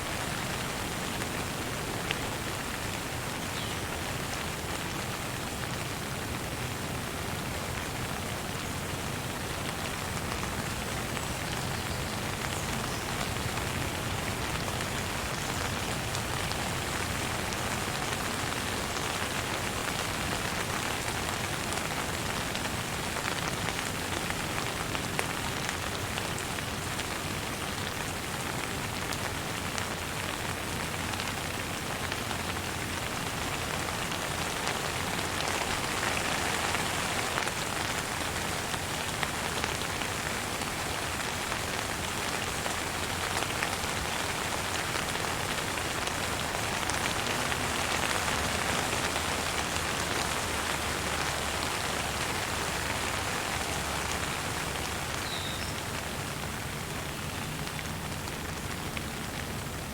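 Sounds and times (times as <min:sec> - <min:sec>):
gentle rain: 0:00.0 - 0:59.9
faint bird chirp: 0:55.2 - 0:55.8.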